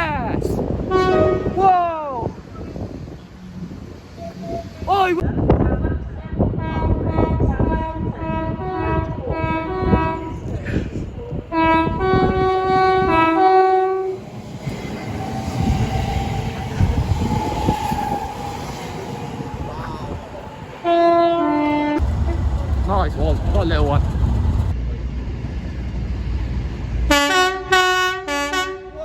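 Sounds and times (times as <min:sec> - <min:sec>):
train rumble and clatter: 0:00.0 - 0:29.0
two-tone train horn: 0:00.9 - 0:01.6, 0:06.5 - 0:10.5, 0:11.5 - 0:14.2, 0:20.8 - 0:22.0, 0:27.1 - 0:29.0.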